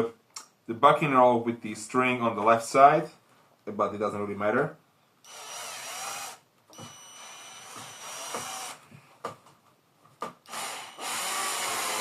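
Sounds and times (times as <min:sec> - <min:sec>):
power drill motor whining: 0:05.3 - 0:08.8, 0:10.5 - 0:12.0.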